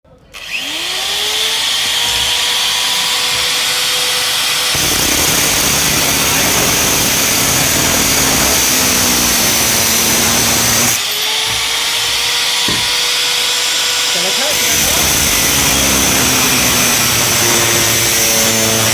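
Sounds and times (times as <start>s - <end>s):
small electric motor whining: 0.4s - 18.9s.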